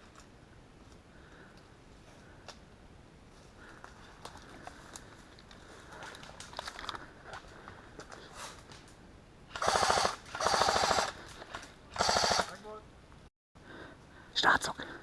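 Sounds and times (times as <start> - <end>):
rustling of movement: 0.0 - 12.2
airsoft rifle full-auto bursts: 9.5 - 11.2, 11.9 - 12.6.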